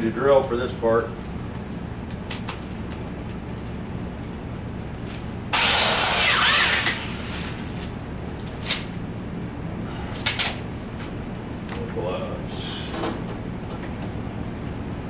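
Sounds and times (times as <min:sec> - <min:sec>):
power drill running: 0:05.5 - 0:07.6.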